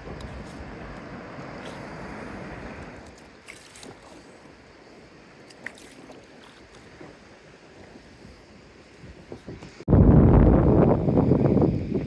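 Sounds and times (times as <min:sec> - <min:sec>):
water sloshing around kayak: 0:00.0 - 0:09.6
water drips and splashes: 0:02.7 - 0:04.6, 0:05.4 - 0:07.2.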